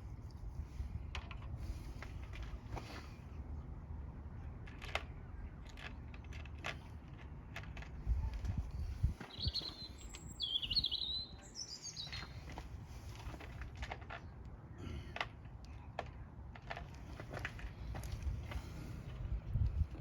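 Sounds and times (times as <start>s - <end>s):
small bird chirping: 8.8s - 12.5s.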